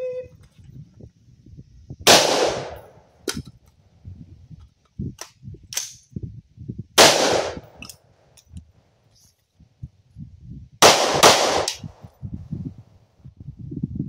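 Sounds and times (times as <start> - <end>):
gunshot echo: 2.1 - 3.0, 7.0 - 7.8, 10.8 - 11.8
rifle shot: 2.1 - 3.0, 7.0 - 7.8, 10.8 - 11.9.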